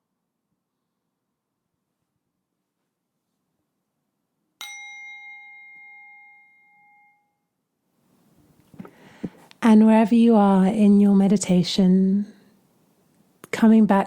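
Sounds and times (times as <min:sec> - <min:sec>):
meditation chime ringing: 0:04.6 - 0:07.5.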